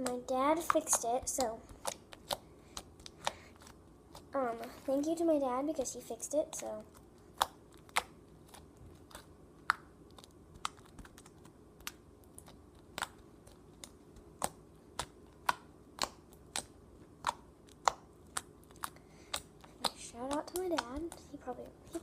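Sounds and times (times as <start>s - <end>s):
slime clicking and popping: 7.3s - 21.4s.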